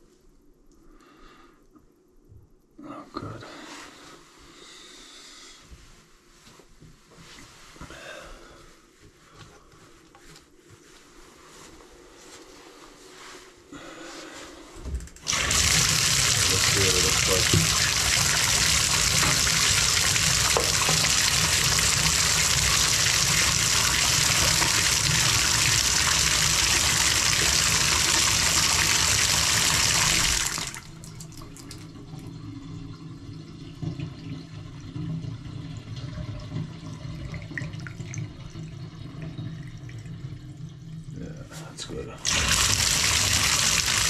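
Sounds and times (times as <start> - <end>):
water trickling: 15.1 - 41.2
faucet running at full flow: 15.2 - 32.4, 42.2 - 44.0.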